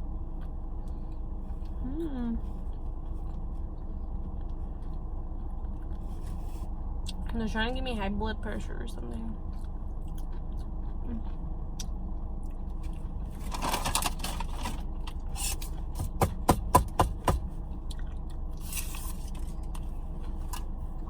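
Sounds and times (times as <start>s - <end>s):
steady low hum: 0.0s - 21.0s
chewing food: 0.1s - 7.3s, 9.3s - 15.9s, 17.4s - 21.0s
paper wrapper rustling: 13.4s - 14.9s.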